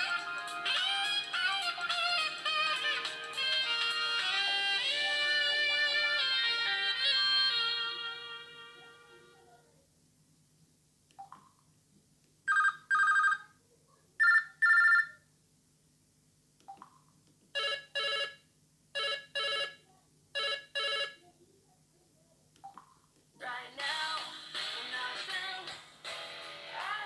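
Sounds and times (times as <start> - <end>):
phone ringtone double ring: 12.5 - 13.5, 14.2 - 15.2, 17.6 - 18.4, 19.0 - 19.8, 20.4 - 21.2.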